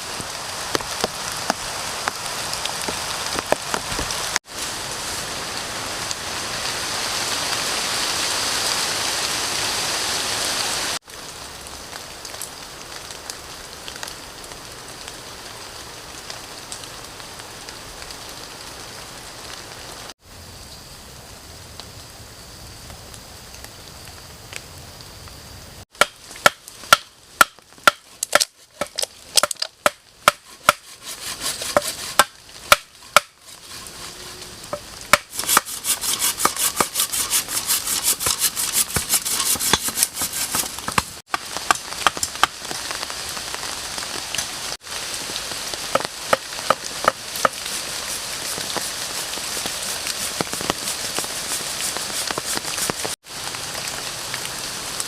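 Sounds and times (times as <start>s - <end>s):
campfire crackling: 0.0s - 6.5s, 25.9s - 54.0s.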